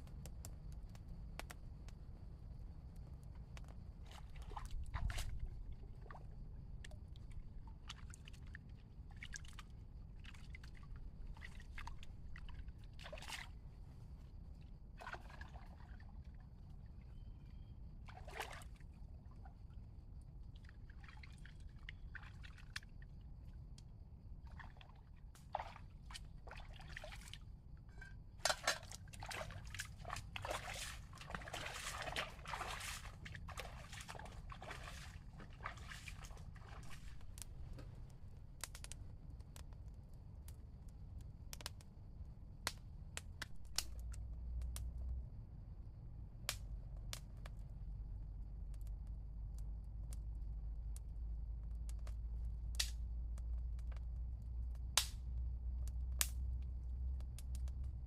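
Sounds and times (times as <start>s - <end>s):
water sloshing and splashing: 3.9s - 19.8s, 20.5s - 23.5s, 24.4s - 38.4s
low steady rumble: 43.5s - 58.0s.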